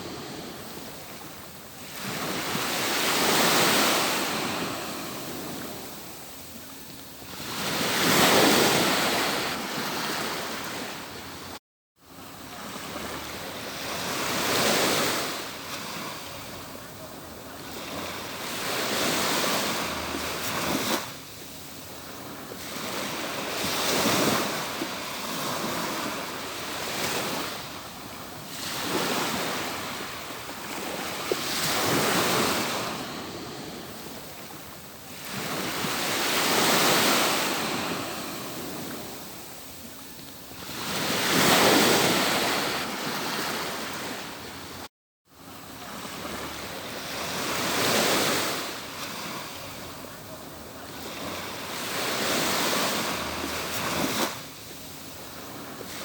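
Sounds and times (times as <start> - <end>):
ocean surf rolling onto beach: 0.0 - 11.6, 12.2 - 44.8.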